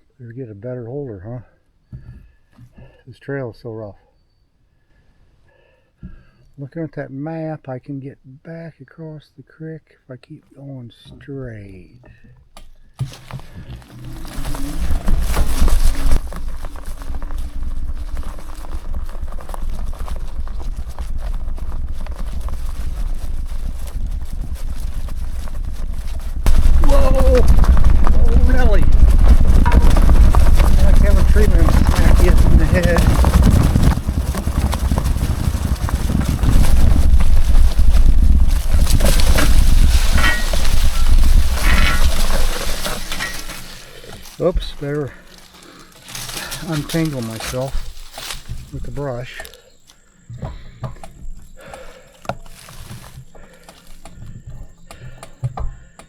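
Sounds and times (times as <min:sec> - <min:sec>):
bike rattling over bumps: 0:12.4 - 0:56.0
heavy low rumble: 0:21.6 - 0:44.8.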